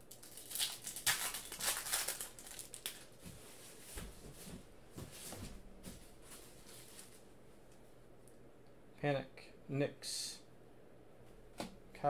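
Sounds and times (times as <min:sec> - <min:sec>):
foil wrapper crinkling and tearing: 0:00.0 - 0:03.1.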